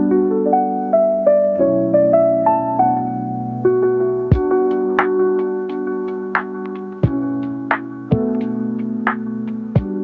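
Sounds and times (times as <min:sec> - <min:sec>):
electric piano chords: 0:00.0 - 0:10.0
light percussive beat: 0:04.3 - 0:10.0.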